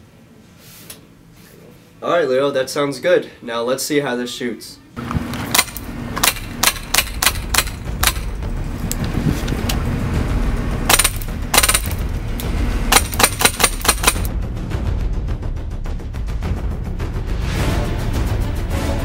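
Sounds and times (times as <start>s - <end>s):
steady low rumble: 5.0s - 18.5s
airsoft rifle shots: 5.5s - 8.4s, 10.9s - 12.0s, 12.9s - 14.3s.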